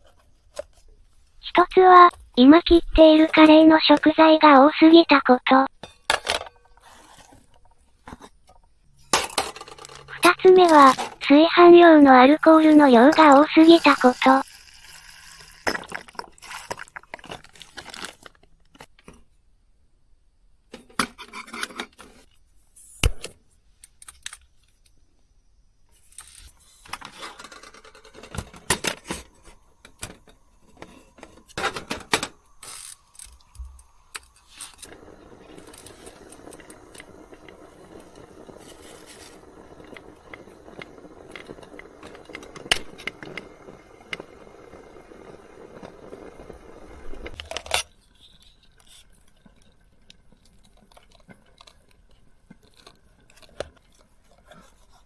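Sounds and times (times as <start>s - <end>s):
steady hiss: 8.8s - 17.9s, 22.1s - 49.2s
food packaging rustling: 12.2s - 19.0s, 26.0s - 43.3s.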